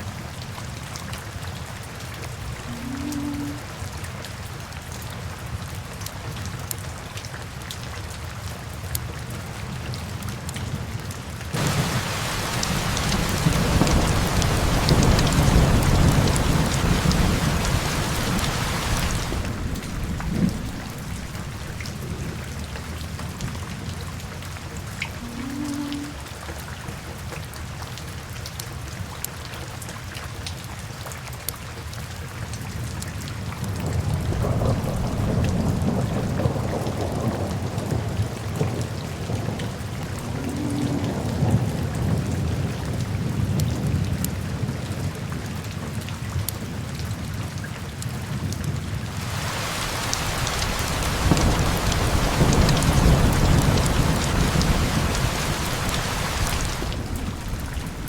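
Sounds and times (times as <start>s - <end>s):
steady rain: 0.0s - 58.0s
thunder rumbling: 11.6s - 24.5s, 33.9s - 42.6s, 49.1s - 58.0s.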